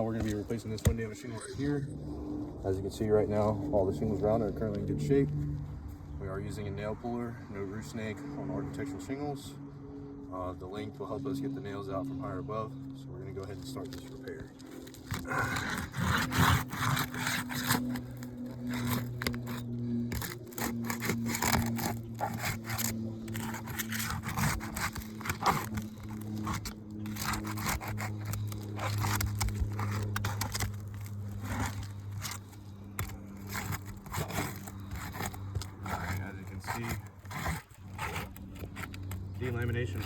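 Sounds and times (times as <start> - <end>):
shingles scraping and tearing: 0.0 - 1.5, 13.3 - 40.0
steady low hum: 0.0 - 40.0.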